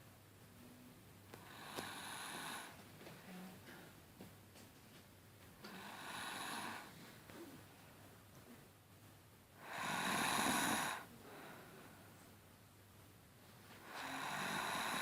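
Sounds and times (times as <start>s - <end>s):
rasping snoring: 1.5s - 2.8s, 5.7s - 7.0s, 9.6s - 11.1s, 13.9s - 15.0s.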